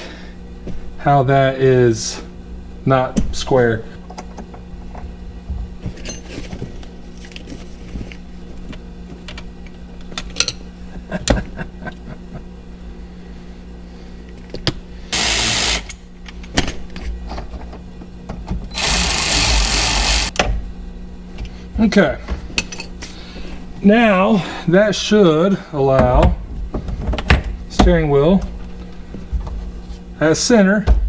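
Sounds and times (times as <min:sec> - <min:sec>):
cordless power tool motor: 0:15.1 - 0:16.0, 0:18.7 - 0:20.4.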